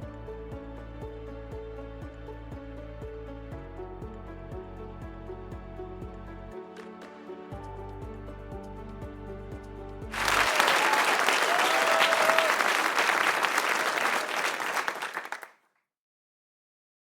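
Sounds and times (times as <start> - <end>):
music with low beat: 7.6 - 10.2
crowd applause: 10.1 - 15.5.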